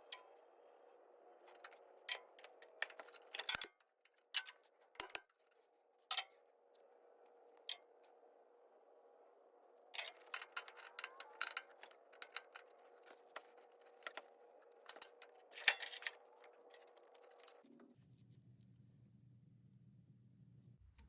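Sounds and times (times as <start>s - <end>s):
faint steady hum: 0.0s - 21.0s
metal tools clicking and rattling: 1.5s - 5.3s, 10.0s - 17.6s.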